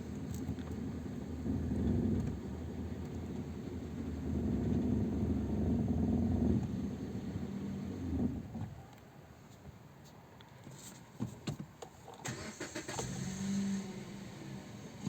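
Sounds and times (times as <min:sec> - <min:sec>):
car engine rumble and hum: 0:00.0 - 0:08.9, 0:12.3 - 0:15.0.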